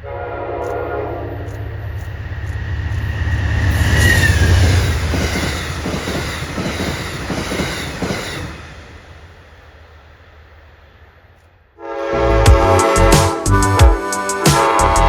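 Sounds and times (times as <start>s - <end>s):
train rumbling past: 0.0s - 15.0s
wheels clacking over rail joints: 1.4s - 9.0s
high whine: 14.5s - 15.0s.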